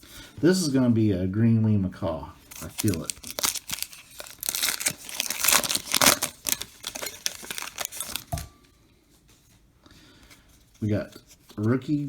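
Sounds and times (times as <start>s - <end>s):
wrapper crinkling and tearing: 2.5s - 8.4s.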